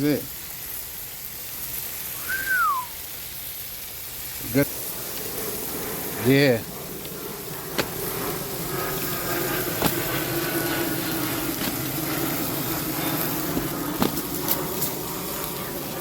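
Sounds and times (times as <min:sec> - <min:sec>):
meat sizzling on a grill: 0:00.0 - 0:16.0
sharp pops: 0:07.7 - 0:08.1, 0:09.7 - 0:10.2, 0:13.5 - 0:14.6.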